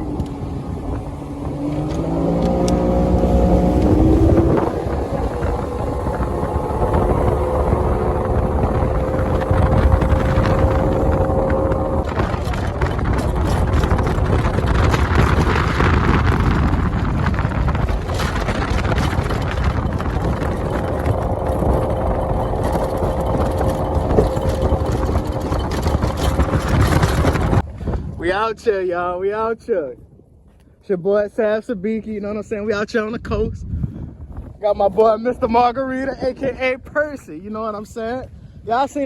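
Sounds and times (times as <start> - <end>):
motorboat engine drone: 0.0 - 27.6
wind buffeting microphone: 0.0 - 39.0.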